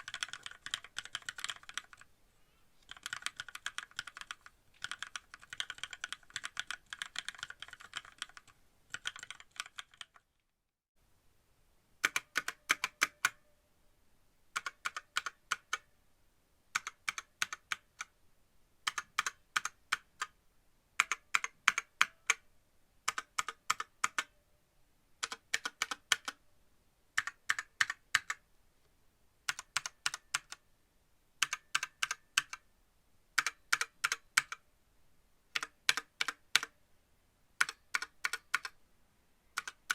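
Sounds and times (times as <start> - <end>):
mechanical keyboard typing: 0.0 - 2.1, 2.8 - 10.4, 12.0 - 13.4, 14.5 - 15.9, 16.7 - 18.1, 18.8 - 20.4, 21.0 - 22.4, 23.1 - 24.3, 25.2 - 26.4, 27.2 - 28.4, 29.5 - 30.6, 31.4 - 32.6, 33.4 - 34.6, 35.5 - 36.8, 37.6 - 38.8, 39.5 - 39.9.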